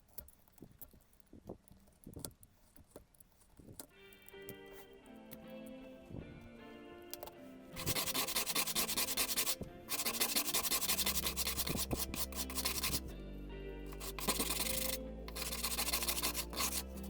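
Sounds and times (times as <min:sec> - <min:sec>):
hand sanding wood: 0:07.8 - 0:13.1, 0:13.9 - 0:17.0.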